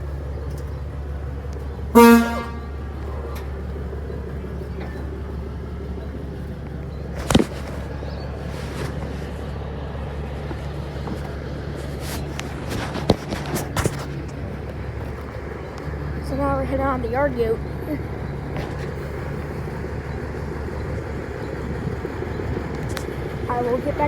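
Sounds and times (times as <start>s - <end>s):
engine rumble: 0.0s - 24.0s
horn toot: 1.9s - 3.4s.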